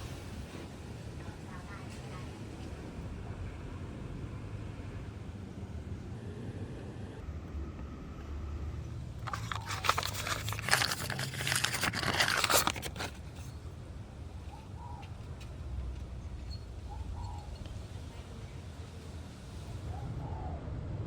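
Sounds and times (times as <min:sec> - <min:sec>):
crunching and crackling: 0:09.2 - 0:13.5.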